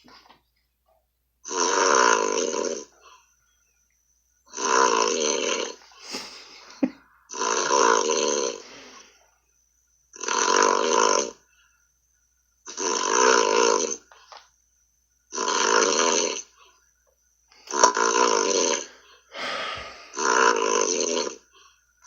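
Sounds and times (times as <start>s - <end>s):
man snoring: 1.5s - 2.9s, 4.5s - 9.1s, 10.1s - 11.4s, 12.7s - 14.0s, 15.3s - 16.6s, 17.7s - 21.5s.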